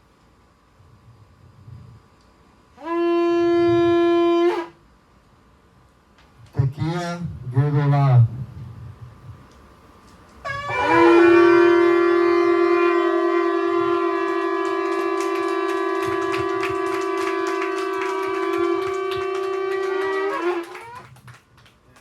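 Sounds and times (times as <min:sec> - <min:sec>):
shofar blast: 0:02.8 - 0:04.8, 0:10.4 - 0:21.2.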